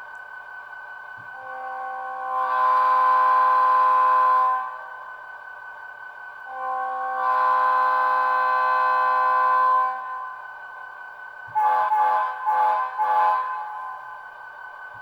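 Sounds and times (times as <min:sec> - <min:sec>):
locomotive air horn blasts: 0:01.4 - 0:05.0, 0:06.5 - 0:10.4, 0:11.5 - 0:14.2.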